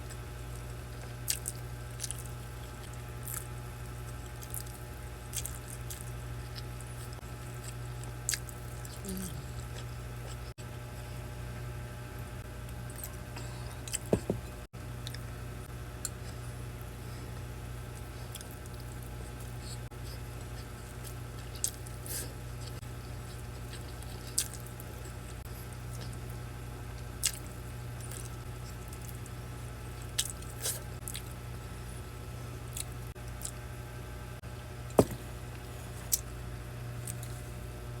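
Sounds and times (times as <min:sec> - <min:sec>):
steady low hum: 0:00.0 - 0:38.0
chewing: 0:00.1 - 0:10.5, 0:16.0 - 0:26.4, 0:27.0 - 0:31.4, 0:32.7 - 0:33.6, 0:37.0 - 0:37.6.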